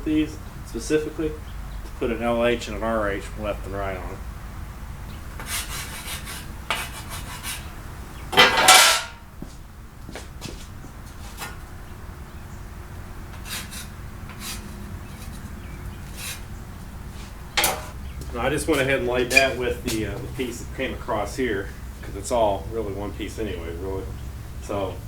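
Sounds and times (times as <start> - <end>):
metal parts rubbing and scraping: 8.4 - 9.1, 13.3 - 18.0.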